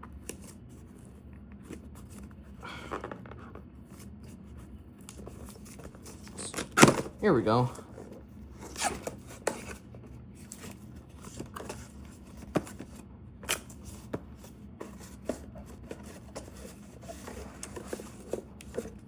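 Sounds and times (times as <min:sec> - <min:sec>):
cardboard box being handled: 0:13.6 - 0:19.0.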